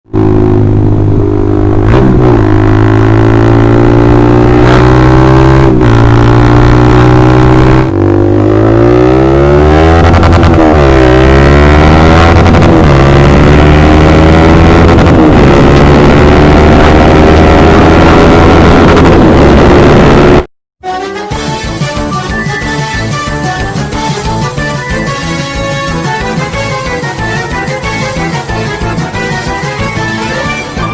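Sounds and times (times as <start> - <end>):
motorcycle engine revving: 0.1 - 20.5.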